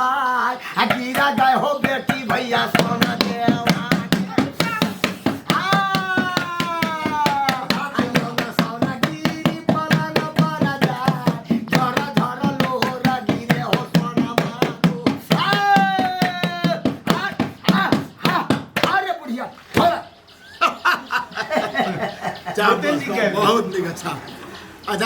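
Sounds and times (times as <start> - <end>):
person chanting: 0.0 - 19.0
percussion beat: 0.8 - 25.0.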